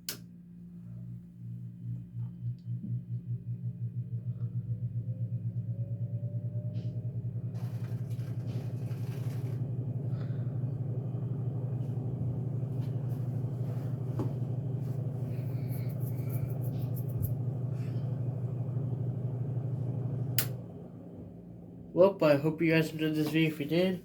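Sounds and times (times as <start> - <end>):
ceiling fan motor humming: 0.0 - 24.0
faint rising whine: 0.3 - 24.0
rush of air from fan blades: 7.5 - 12.1.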